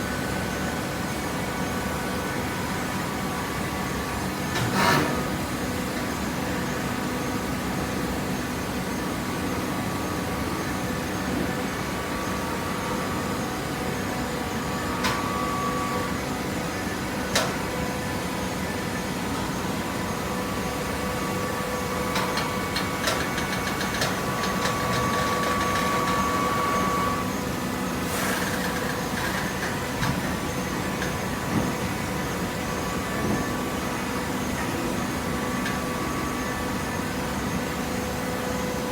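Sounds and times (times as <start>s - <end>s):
baling press machine hum: 10.4s - 38.9s.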